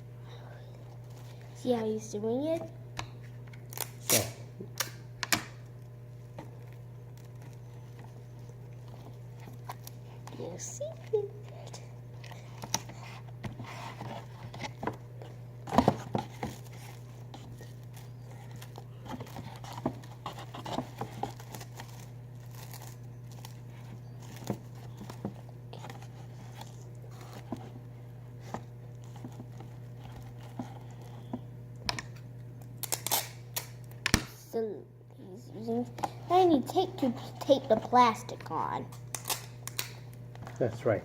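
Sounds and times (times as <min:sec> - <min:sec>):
steady low hum: 0:00.0 - 0:41.0
tape being pulled and torn: 0:03.7 - 0:05.0, 0:32.8 - 0:33.8, 0:39.1 - 0:40.1
plastic wrap crinkling: 0:16.2 - 0:27.4.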